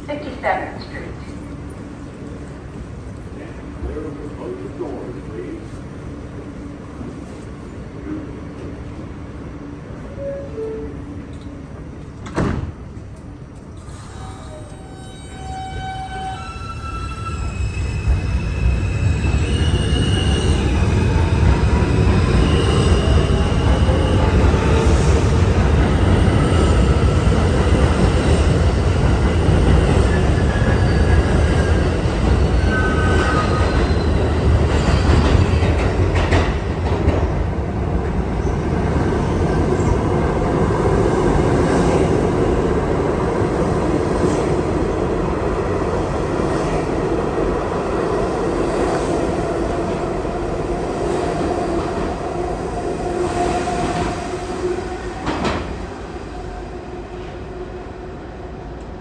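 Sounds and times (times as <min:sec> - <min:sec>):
subway train rumbling: 0:00.0 - 0:59.0.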